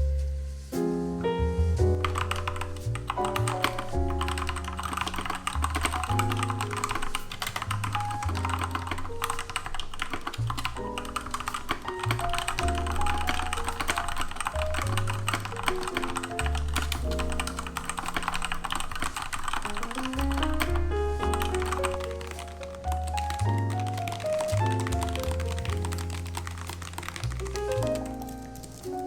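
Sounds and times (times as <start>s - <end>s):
background music with bass: 0.0s - 5.0s, 19.8s - 29.0s
mechanical keyboard typing: 1.9s - 29.0s.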